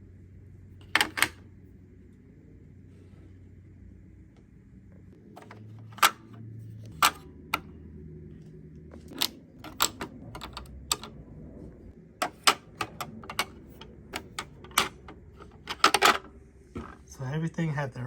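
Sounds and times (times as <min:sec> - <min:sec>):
tools clicking into plastic slots: 0:09.1 - 0:11.2, 0:12.2 - 0:16.2.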